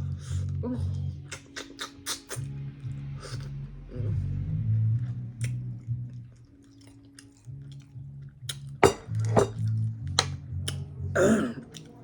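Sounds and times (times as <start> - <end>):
person chewing with lip smacking: 0.4 - 2.6, 5.0 - 8.8, 9.6 - 10.9, 11.6 - 12.0.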